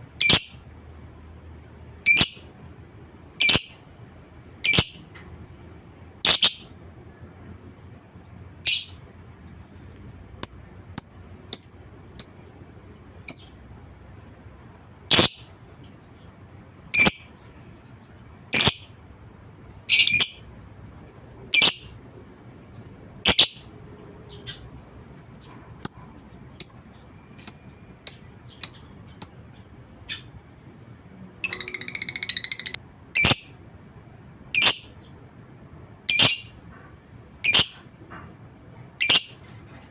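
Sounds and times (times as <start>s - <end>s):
lovebird squawks: 0.2s - 0.6s, 3.4s - 3.8s, 6.2s - 6.7s, 10.4s - 12.4s, 13.3s - 13.5s, 15.1s - 15.4s, 18.6s - 18.9s, 21.6s - 21.9s, 27.5s - 29.4s, 31.4s - 33.5s, 34.6s - 34.9s, 36.1s - 36.5s, 37.4s - 37.8s, 39.0s - 39.4s
lovebird sharp chirps: 6.3s - 6.7s, 10.4s - 12.4s, 13.3s - 13.6s, 25.8s - 26.9s, 27.5s - 29.5s, 31.4s - 33.5s, 34.6s - 34.9s, 39.0s - 39.4s.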